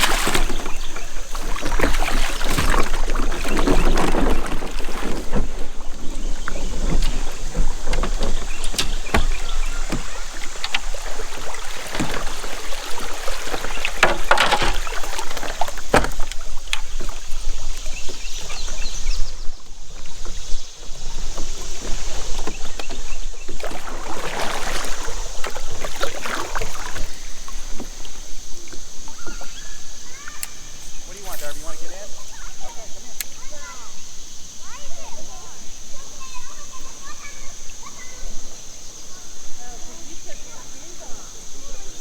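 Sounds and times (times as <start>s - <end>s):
rustling: 0.0s - 19.6s
knocks and scrapes on kayak hull: 0.0s - 29.6s
water noise: 0.0s - 42.0s.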